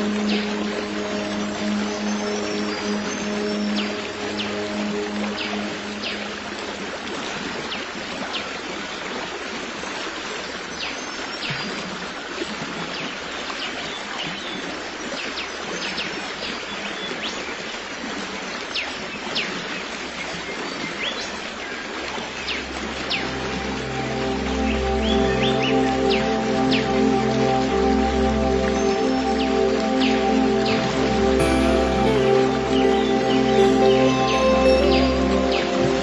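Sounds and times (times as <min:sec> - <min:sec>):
soft music: 0:00.0 - 0:07.5, 0:22.3 - 0:36.0
stream water flowing: 0:00.0 - 0:36.0.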